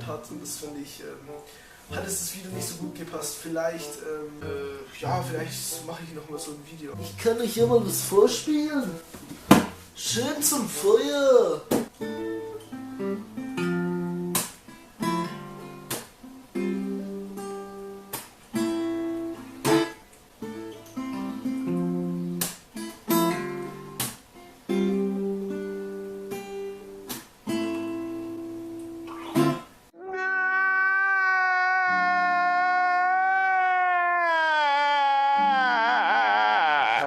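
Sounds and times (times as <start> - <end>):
acoustic guitar strumming chords: 11.9 - 29.7.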